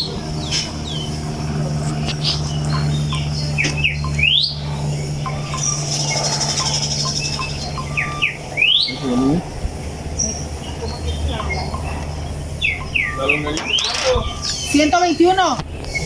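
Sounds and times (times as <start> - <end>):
birds chirping: 0.0 - 16.0
steady low hum: 0.0 - 16.0
rising whistles: 3.6 - 9.4, 12.5 - 16.0.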